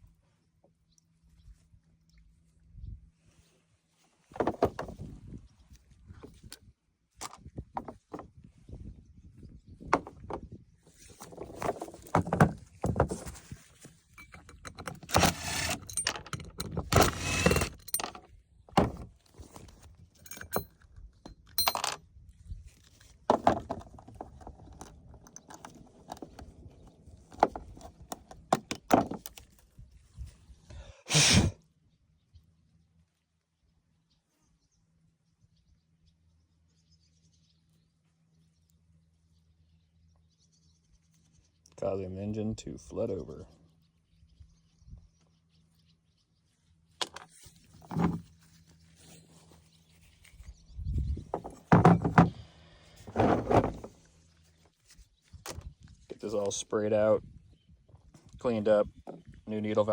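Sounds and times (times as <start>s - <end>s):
tools and metal clattering: 11.1s - 22.0s, 47.0s - 48.3s, 51.3s - 52.4s, 53.0s - 54.0s.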